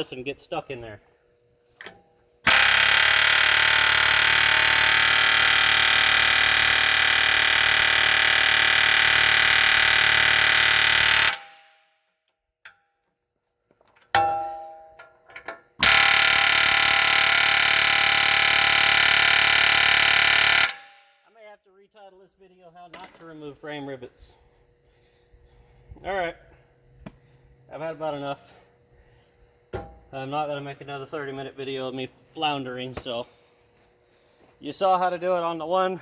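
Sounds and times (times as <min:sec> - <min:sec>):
pneumatic air chisel hammering: 0:01.8 - 0:11.6, 0:15.8 - 0:21.1.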